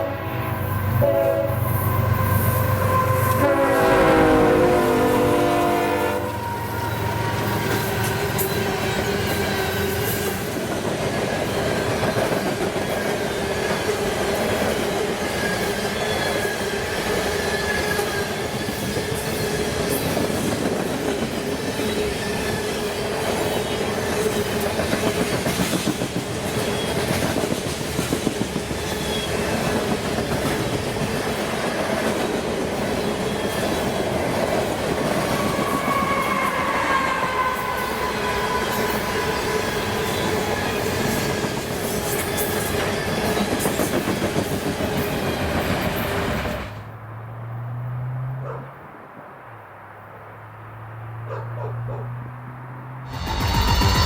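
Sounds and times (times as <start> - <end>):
train wheels rumbling on rail: 0.0 - 46.9
clickety-clack over rail joints: 6.5 - 36.2, 39.6 - 46.8.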